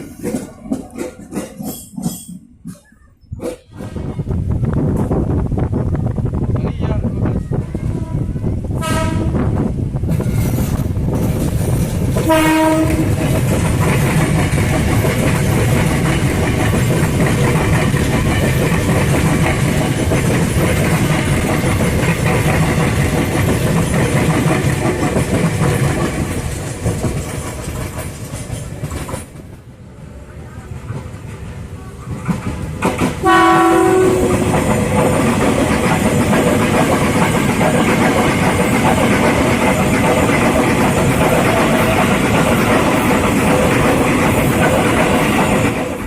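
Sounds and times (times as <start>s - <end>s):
train rumble and wheel clatter: 0.0s - 46.0s
train horn blast: 7.9s - 9.5s, 12.2s - 13.2s, 33.2s - 34.4s.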